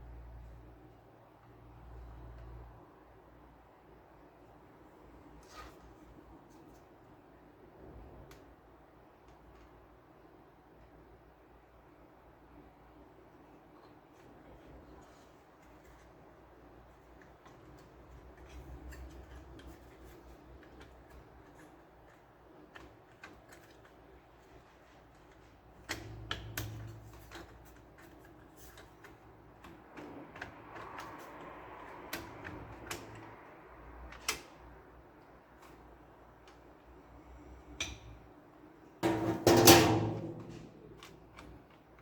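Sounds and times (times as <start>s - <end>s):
printer parts clicking and knocking: 25.1s - 34.6s, 39.0s - 42.0s
scraping rattle: 39.0s - 41.0s.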